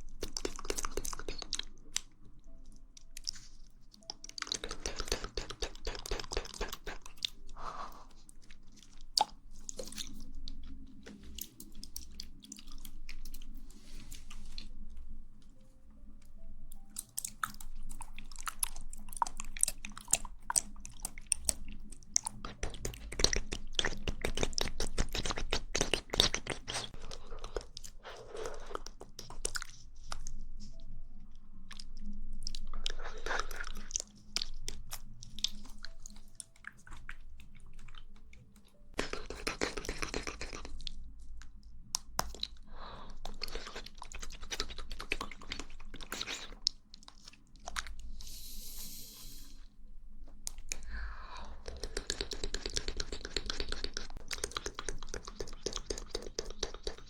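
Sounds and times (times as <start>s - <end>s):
wet mouth chewing clicks: 0.1s - 13.6s, 16.7s - 30.8s, 31.7s - 49.4s, 50.5s - 57.0s
airy mouth sounds: 39.0s - 40.9s, 42.2s - 49.7s, 50.7s - 57.0s.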